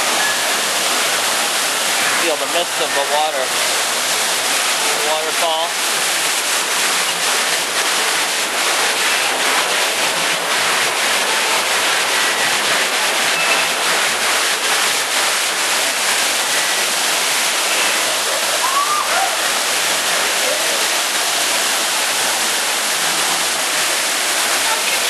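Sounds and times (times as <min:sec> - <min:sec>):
rush of waterfall: 0:00.0 - 0:25.0.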